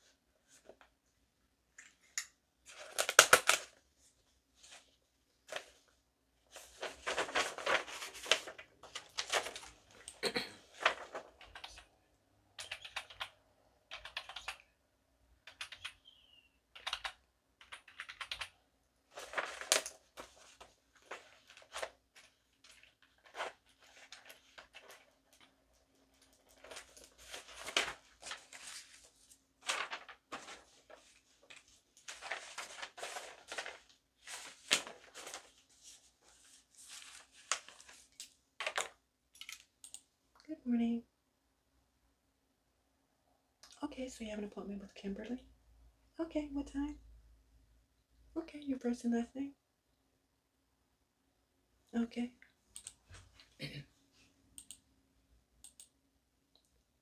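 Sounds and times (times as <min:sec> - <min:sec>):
keyboard typing clicks: 0:12.6 - 0:13.3, 0:13.9 - 0:14.6, 0:15.5 - 0:16.0, 0:16.8 - 0:18.5, 0:54.6 - 0:54.8.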